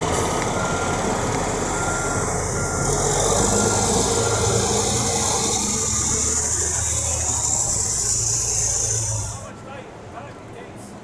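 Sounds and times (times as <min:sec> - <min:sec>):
heavy truck engine running: 0:00.0 - 0:09.5
backup alarm beeping: 0:00.5 - 0:05.3.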